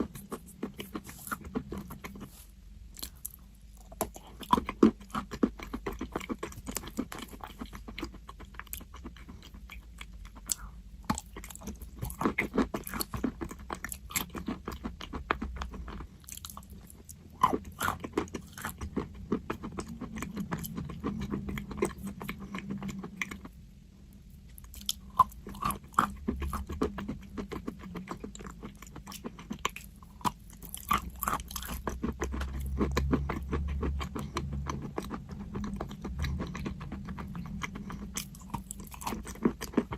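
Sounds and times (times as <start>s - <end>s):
chalk being chewed: 0.0s - 3.4s.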